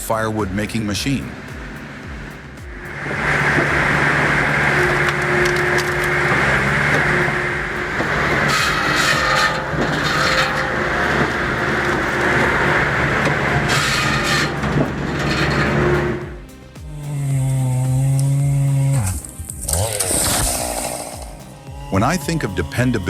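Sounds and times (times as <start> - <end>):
firewood processor engine drone: 0.0 - 23.0
logs being sawn and split: 17.0 - 23.0.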